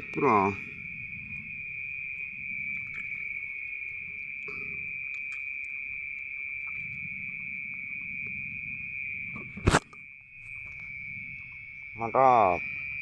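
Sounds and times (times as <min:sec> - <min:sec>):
insects droning: 0:00.0 - 0:13.0
faint clicks and rustles: 0:01.3 - 0:08.4.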